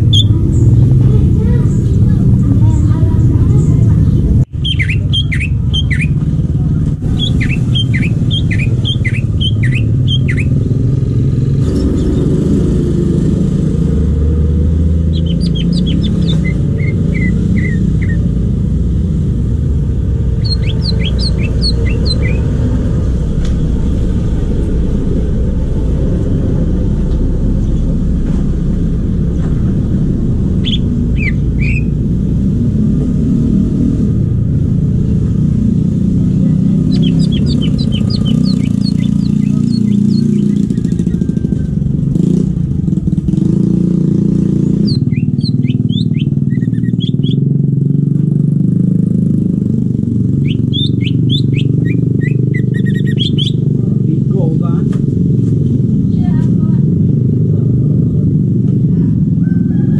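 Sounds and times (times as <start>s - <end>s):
bird singing high notes: 0.0s - 1.0s, 4.5s - 6.2s, 7.0s - 10.7s, 15.0s - 18.4s, 20.4s - 22.7s, 30.4s - 32.1s, 36.4s - 41.3s, 44.8s - 47.5s, 50.3s - 53.7s
steady low rumble: 0.0s - 12.2s, 15.0s - 48.6s.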